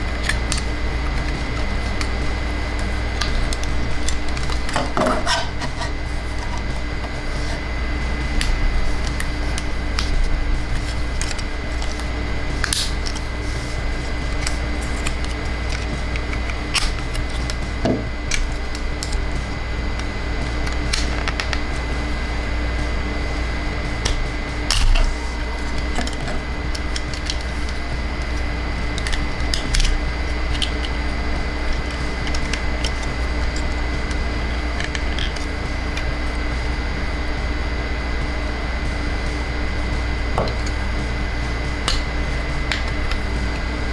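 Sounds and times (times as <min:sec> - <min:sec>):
faint high whine: 0:00.0 - 0:43.9
low electrical hum: 0:00.0 - 0:43.9
plastic toy parts clicking: 0:29.0 - 0:31.0, 0:34.8 - 0:36.1.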